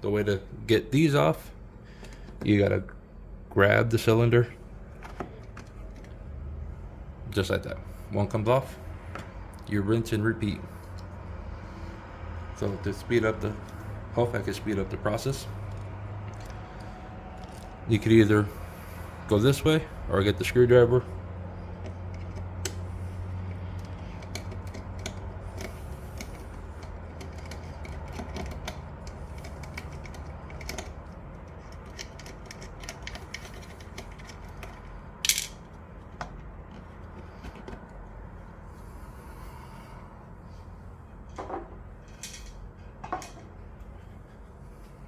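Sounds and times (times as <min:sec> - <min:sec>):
low steady hum: 0:00.0 - 0:45.0
plastic and metal parts clicking: 0:23.7 - 0:37.9.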